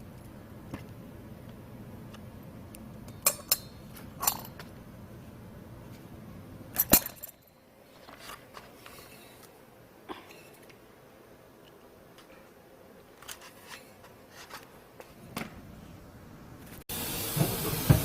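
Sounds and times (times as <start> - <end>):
steady low hum: 0.0 - 18.0
metal tools clinking: 3.1 - 4.6, 6.8 - 9.3.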